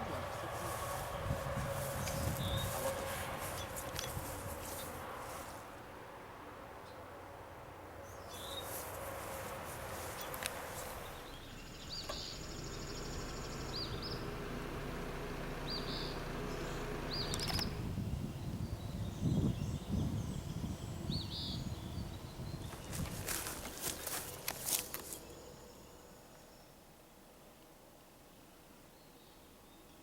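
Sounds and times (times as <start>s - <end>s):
low rumbles: 0.0s - 5.4s
small birds chirping: 0.0s - 5.7s, 8.0s - 26.8s
outdoor background noise: 0.0s - 30.0s.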